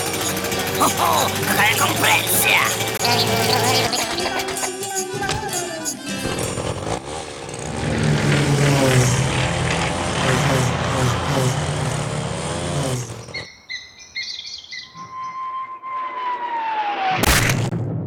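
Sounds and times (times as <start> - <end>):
bird-like chirps: 13.2 - 15.9.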